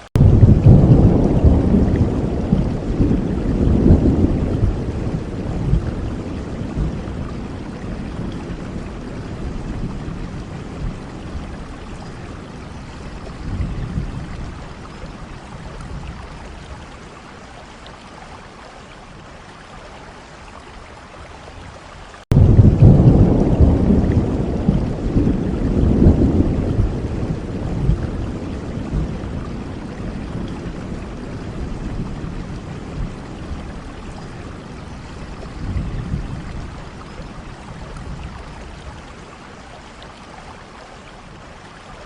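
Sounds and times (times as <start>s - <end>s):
steady rain: 0.0s - 42.0s
rolling thunder: 0.2s - 16.4s, 22.3s - 38.7s.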